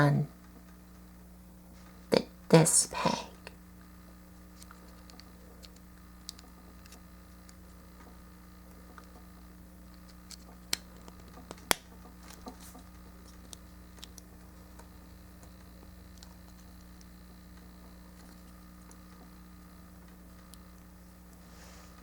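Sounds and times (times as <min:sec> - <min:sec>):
steady low hum: 0:00.0 - 0:22.0
plastic parts clicking together: 0:04.6 - 0:07.0.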